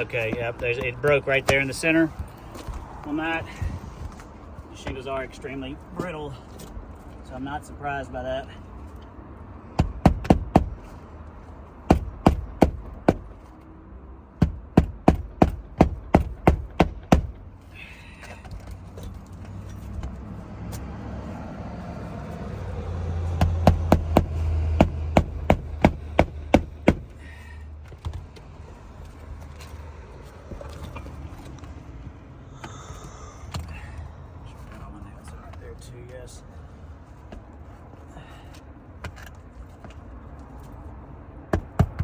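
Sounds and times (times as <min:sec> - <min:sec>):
hammer driving nails into shingle: 0:09.8 - 0:10.8, 0:11.9 - 0:13.4, 0:14.4 - 0:17.4, 0:23.4 - 0:27.2, 0:41.5 - 0:42.0.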